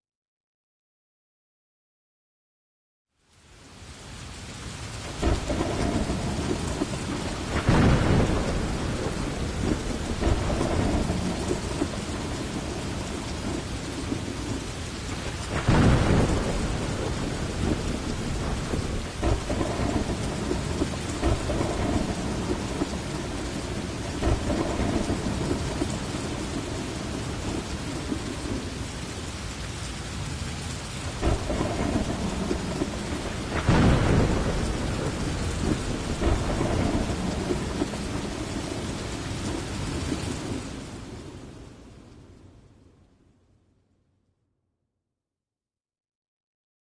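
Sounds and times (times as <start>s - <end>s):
heavy rain falling: 3.2s - 42.9s
thunder rolling: 5.0s - 29.0s, 31.0s - 41.7s.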